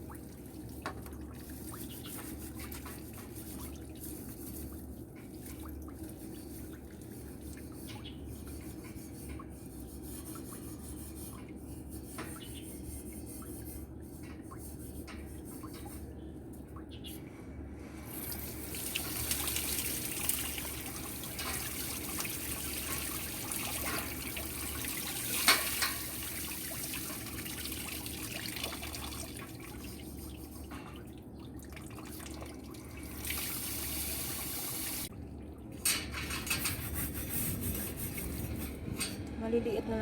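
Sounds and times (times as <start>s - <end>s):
grill grates being washed: 0.3s - 16.1s, 18.0s - 31.1s, 32.8s - 35.1s, 35.8s - 39.2s
water running from a tap: 18.1s - 30.0s, 32.2s - 35.1s.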